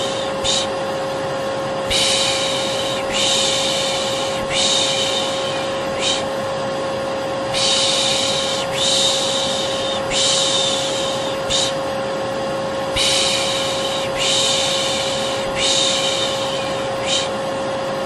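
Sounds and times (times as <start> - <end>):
person shushing: 0.0 - 0.8, 1.9 - 6.3, 7.5 - 11.8, 13.0 - 17.4
vacuum cleaner whine: 0.0 - 18.0.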